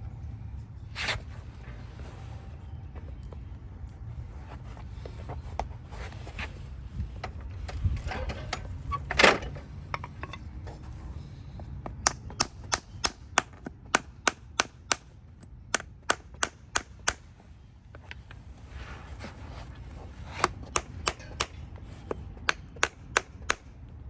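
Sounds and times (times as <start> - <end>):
hammer tapping: 20.7 - 21.6.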